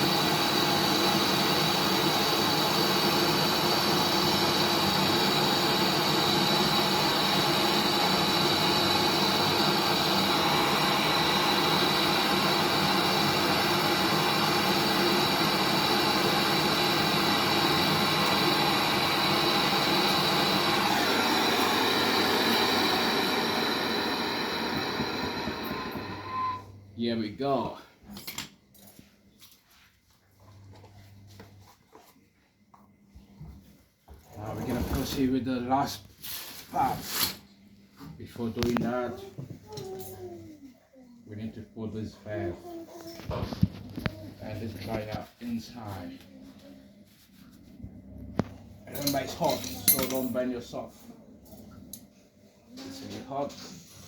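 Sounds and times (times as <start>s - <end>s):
gas torch hissing roar: 0.0s - 26.6s.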